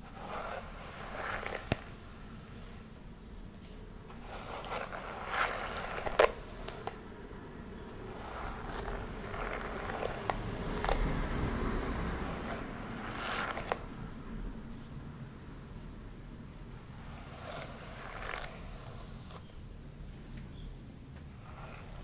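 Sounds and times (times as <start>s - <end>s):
hair being combed: 0.0s - 15.0s, 16.9s - 19.5s.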